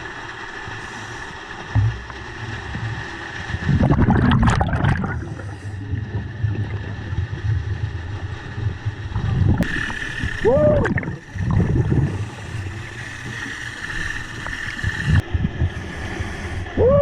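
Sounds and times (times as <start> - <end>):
bubbles from diver exhalation: 3.5 - 7.4, 9.2 - 12.6.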